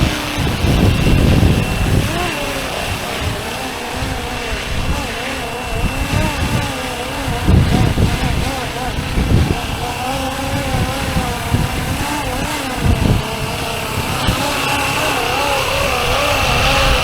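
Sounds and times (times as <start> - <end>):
gusty low rumble: 0.0 - 5.0
rc helicopter motor and rotor whine: 0.0 - 17.0
thin steady high tone: 0.0 - 17.0.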